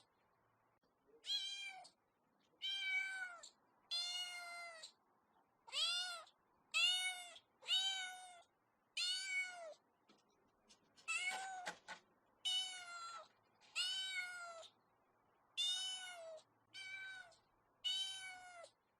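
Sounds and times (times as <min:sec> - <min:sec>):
cat meowing: 0:01.2 - 0:02.0, 0:02.6 - 0:05.0, 0:05.7 - 0:09.8, 0:12.4 - 0:14.8, 0:15.6 - 0:18.8.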